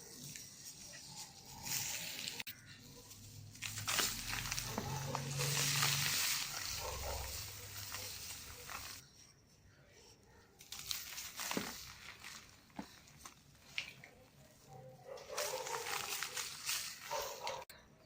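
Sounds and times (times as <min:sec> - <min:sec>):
cement crumbling and crunching: 0:03.6 - 0:09.0, 0:10.8 - 0:14.0.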